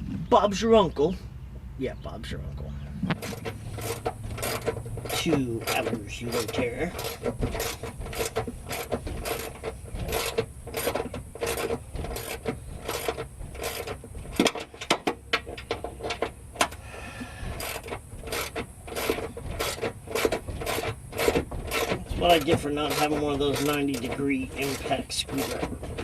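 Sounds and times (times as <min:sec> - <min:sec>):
ratchet wrench clicking: 0:03.2 - 0:15.0, 0:15.6 - 0:26.0.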